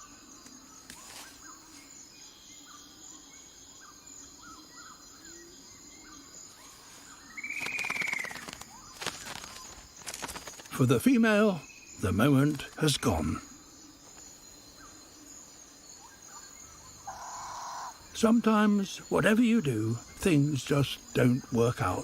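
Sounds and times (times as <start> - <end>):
small bird chirps: 6.1 - 9.8
harsh rasping bird call: 17.0 - 18.0.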